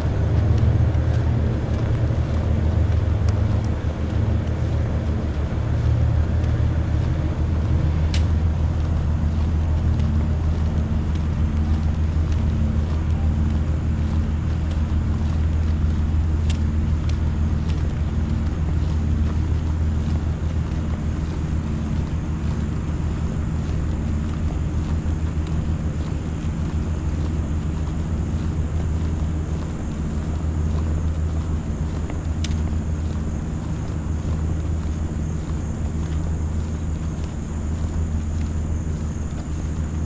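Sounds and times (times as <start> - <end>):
low engine-like drone: 0.0 - 40.0
faint clicks: 8.0 - 40.0.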